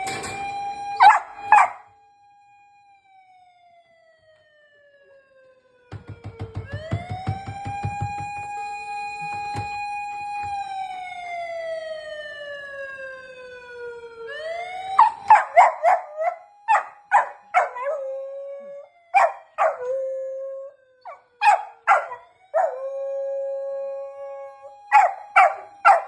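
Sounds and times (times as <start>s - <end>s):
police siren wailing: 0.0s - 26.0s
dog howling: 19.2s - 26.0s.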